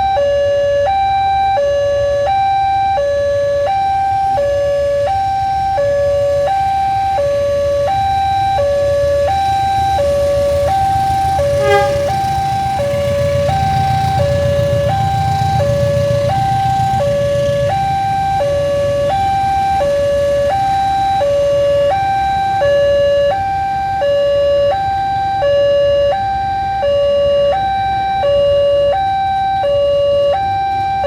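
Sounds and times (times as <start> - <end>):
level crossing two-tone alarm: 0.0 - 31.0
train horn toot: 10.2 - 17.6.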